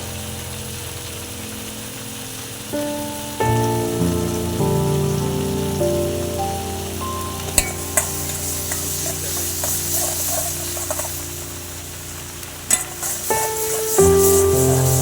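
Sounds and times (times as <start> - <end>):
food sizzling in hot oil: 0.0 - 15.0
soft background music: 0.0 - 15.0
utensil clicking against pan: 7.4 - 11.2, 12.7 - 14.1.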